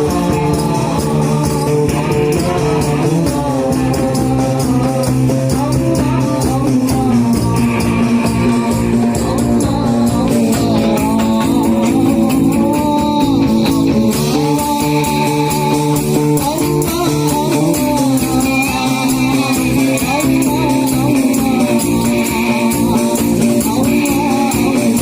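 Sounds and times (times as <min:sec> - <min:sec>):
jingling hand percussion: 0:00.0 - 0:25.0
person singing devotional melody: 0:00.0 - 0:25.0.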